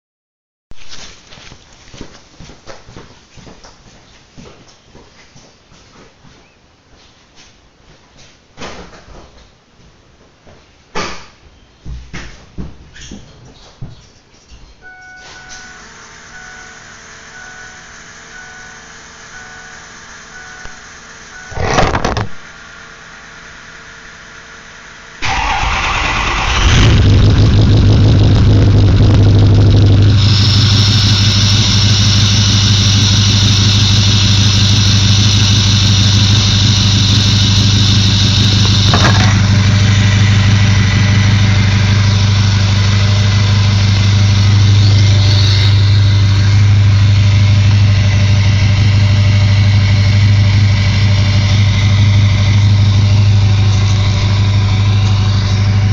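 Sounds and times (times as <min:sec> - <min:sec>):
high whine: 0:14.8 - 0:55.9
diesel engine cranking and idling: 0:23.2 - 0:55.9.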